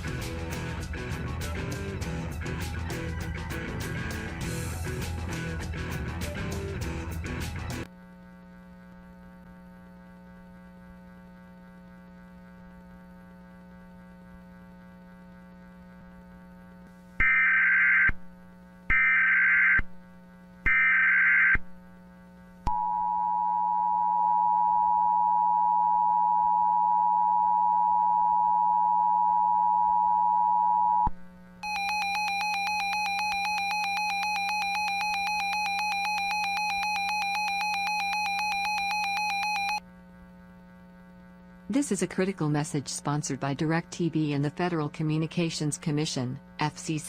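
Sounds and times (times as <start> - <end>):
low steady hum: 7.8 - 47.0
pulsing buzzy alarm tone: 17.2 - 18.3, 18.9 - 20.0, 20.6 - 21.7, 31.6 - 39.8
two-tone attention signal: 22.8 - 39.8.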